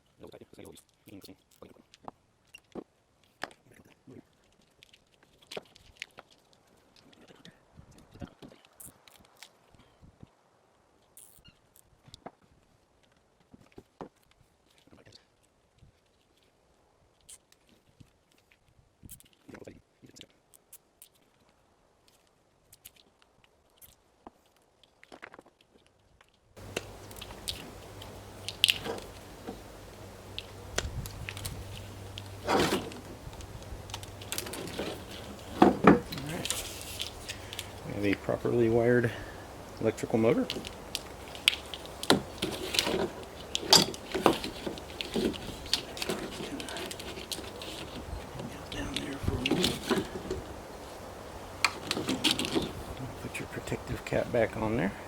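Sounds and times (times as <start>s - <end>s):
clicks and handling knocks: 26.6s - 38.4s, 39.2s - 50.7s, 51.5s - 53.0s
steady low hum: 26.6s - 55.0s.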